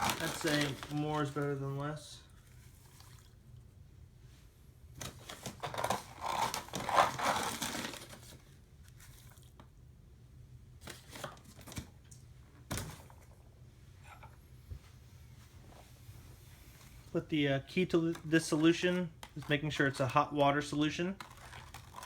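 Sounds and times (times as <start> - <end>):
powder being poured: 0.0 - 1.8.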